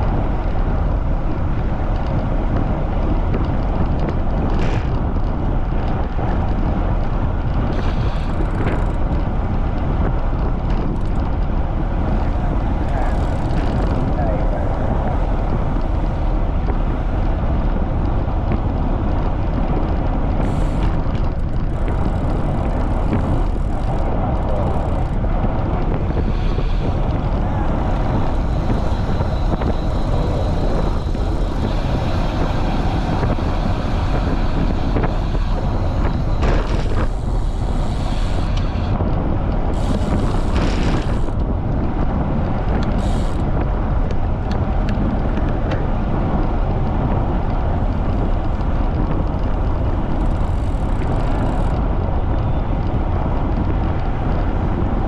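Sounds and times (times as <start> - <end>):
wind buffeting microphone: 0.0 - 55.0.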